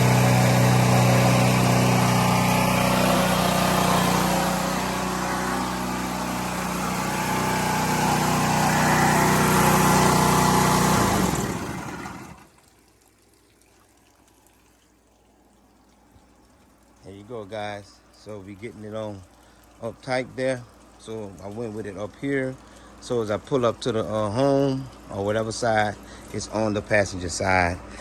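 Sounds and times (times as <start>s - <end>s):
hiss of spraying water: 0.0s - 12.1s
pressure washer engine running: 0.0s - 12.5s.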